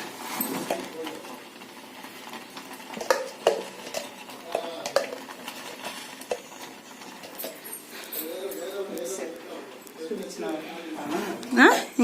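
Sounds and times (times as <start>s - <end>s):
spoon scraping pot: 2.3s - 9.1s
spoon knocking against pot: 3.0s - 5.2s.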